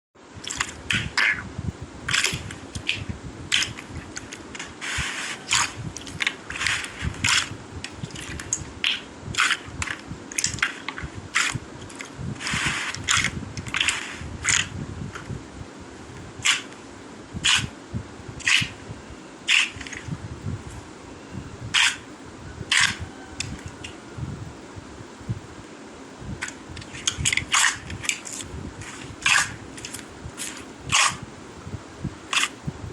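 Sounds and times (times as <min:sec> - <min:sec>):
slime squelching and popping: 0:00.4 - 0:01.4, 0:02.1 - 0:04.7, 0:05.4 - 0:14.7.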